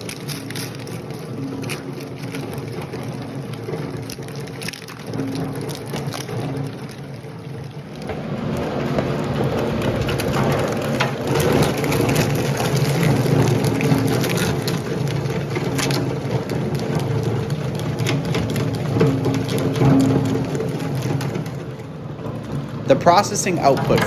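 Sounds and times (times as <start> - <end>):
wire and plastic crackling: 0.0 - 24.0.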